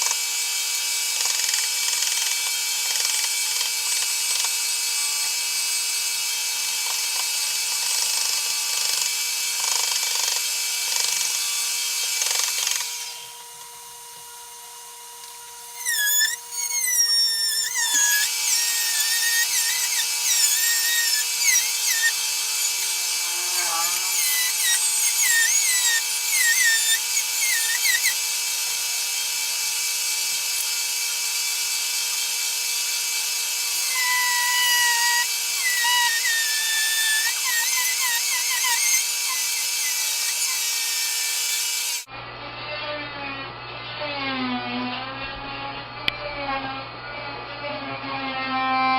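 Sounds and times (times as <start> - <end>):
milling cutter cutting wood: 0.0 - 42.1
motor tone: 13.2 - 28.2
rapid wavering squeals: 15.8 - 28.2.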